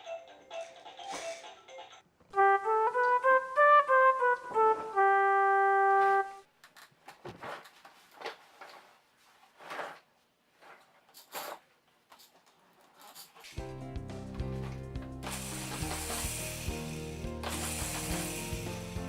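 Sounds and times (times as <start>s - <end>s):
plastic toys clacking: 0.5s - 2.0s, 11.1s - 13.6s.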